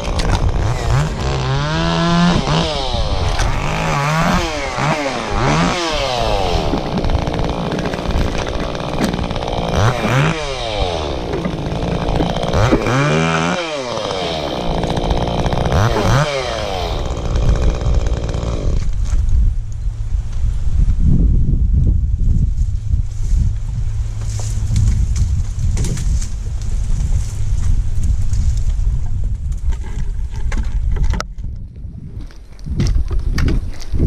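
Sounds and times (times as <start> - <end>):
chainsaw revving: 0.0 - 19.1.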